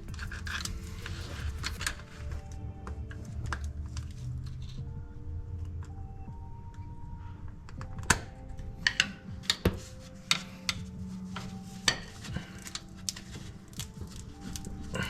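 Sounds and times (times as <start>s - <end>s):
hand tools clicking and clanking: 8.7s - 15.0s.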